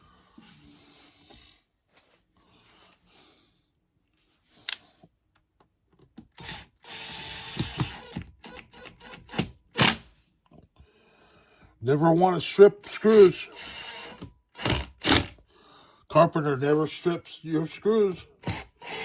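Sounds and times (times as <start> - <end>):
screwdriver driving screws: 6.3 - 10.0, 12.9 - 15.4, 18.4 - 19.0.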